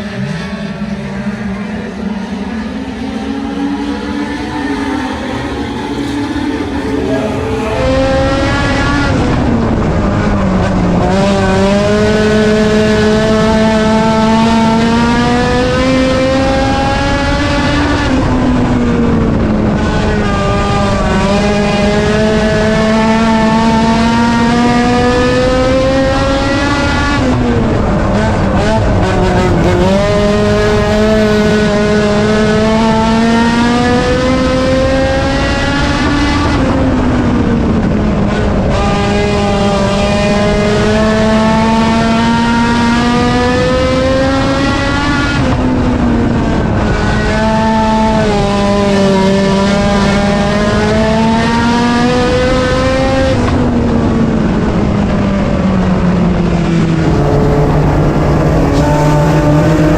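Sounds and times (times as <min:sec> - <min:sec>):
race car engine running hard: 0:00.0 - 0:59.9.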